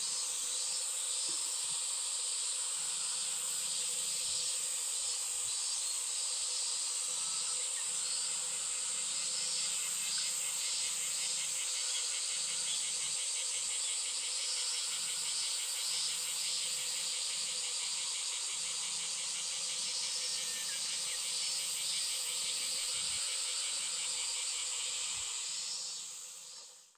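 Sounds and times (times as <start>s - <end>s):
insect chorus shrilling: 0.0s - 26.8s.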